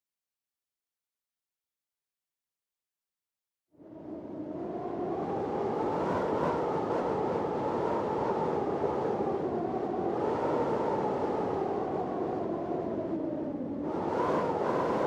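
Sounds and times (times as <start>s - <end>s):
storm wind howling: 3.8s - 15.0s.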